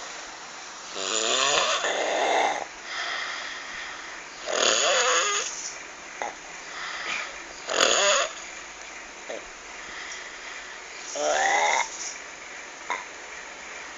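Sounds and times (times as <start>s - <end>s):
loud croaky snoring: 1.0s - 2.7s, 4.4s - 5.6s, 7.6s - 8.4s, 11.0s - 12.2s, 12.9s - 13.1s.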